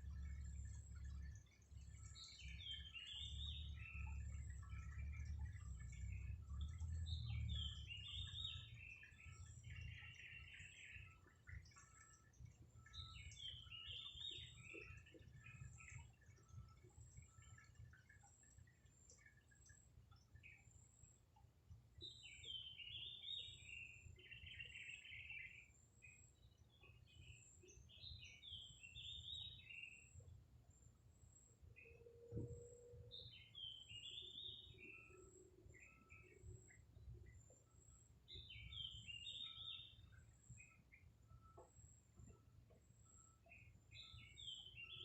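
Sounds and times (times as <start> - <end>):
low steady rumble: 0.0 - 20.0
small birds chirping: 0.0 - 45.0.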